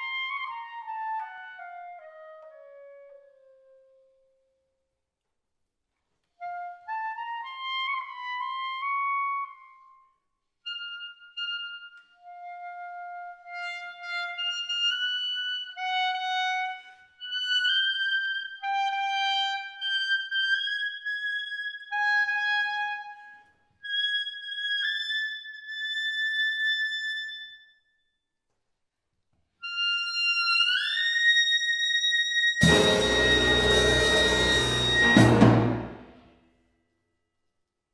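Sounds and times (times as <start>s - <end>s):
solo clarinet: 6.4s - 10.1s, 10.7s - 27.5s, 32.6s - 36.1s.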